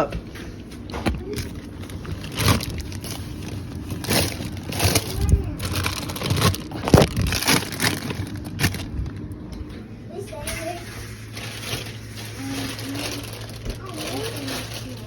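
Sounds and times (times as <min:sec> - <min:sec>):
plastic crinkling: 0:00.6 - 0:09.5, 0:11.0 - 0:15.0
knocks of packages: 0:00.8 - 0:09.2.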